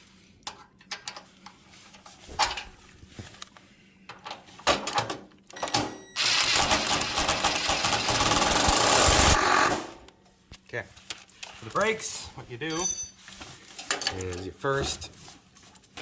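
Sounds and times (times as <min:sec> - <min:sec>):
power tool rattling: 0:06.2 - 0:10.0.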